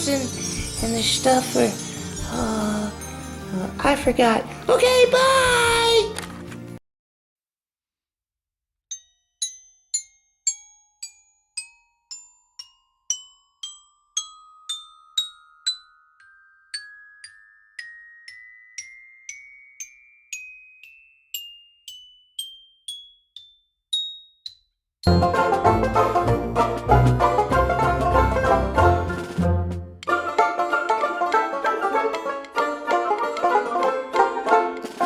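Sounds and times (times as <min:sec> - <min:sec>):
mallet percussion rising notes: 0:00.0 - 0:06.0, 0:25.0 - 0:35.0
other music: 0:25.1 - 0:35.0.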